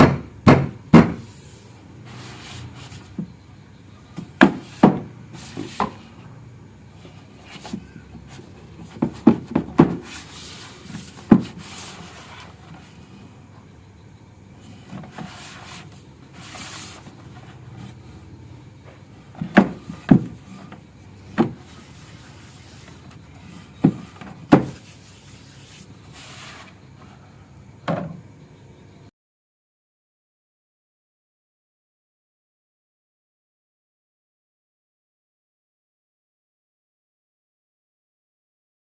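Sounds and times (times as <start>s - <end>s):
wood rubbing and scraping: 1.0s - 13.6s, 14.5s - 27.3s
wooden pieces knocking: 7.5s - 12.8s, 19.3s - 24.9s.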